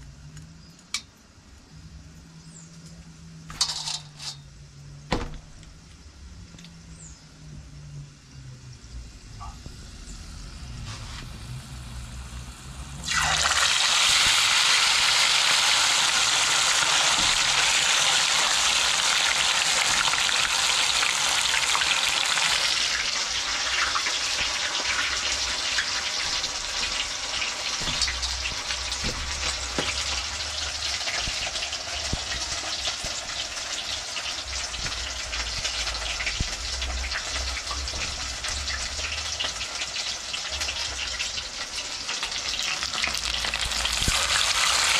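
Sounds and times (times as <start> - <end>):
chicken sizzling in hot oil: 9.8 - 44.9.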